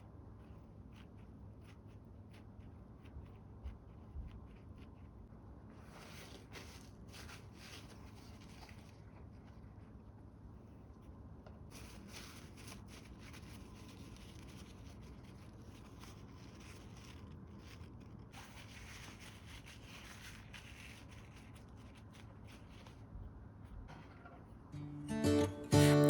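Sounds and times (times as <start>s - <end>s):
plastic rustling and crinkling: 0.4s - 10.0s, 11.0s - 24.4s.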